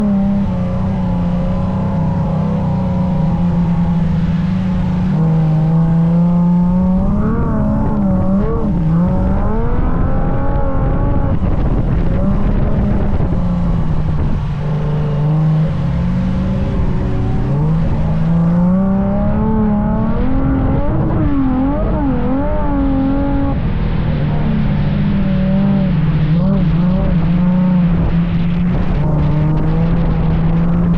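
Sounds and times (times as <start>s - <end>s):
engine revving: 0.0s - 30.9s.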